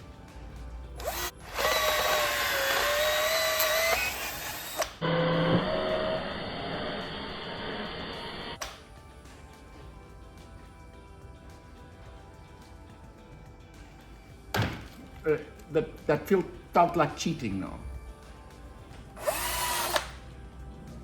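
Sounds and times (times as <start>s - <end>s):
power drill whining: 1.0s - 8.6s, 19.2s - 20.2s.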